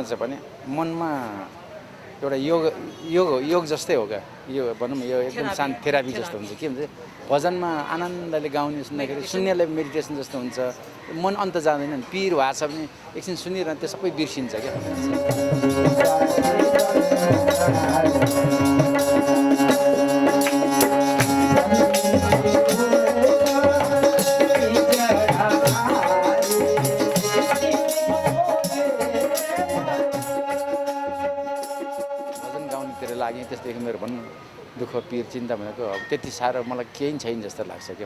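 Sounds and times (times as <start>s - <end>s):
sustained held notes: 14.6s - 33.8s
jingling percussion: 14.6s - 34.0s
wavering melody: 14.6s - 34.0s.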